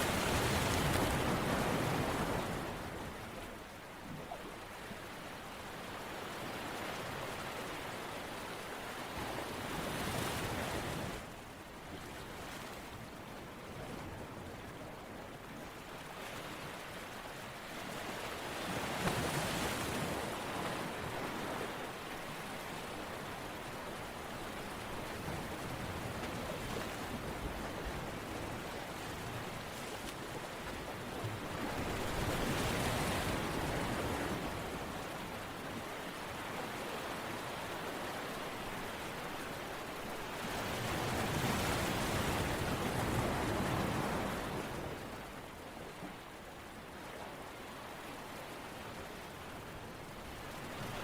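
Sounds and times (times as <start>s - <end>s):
rushing water: 0.0s - 3.9s.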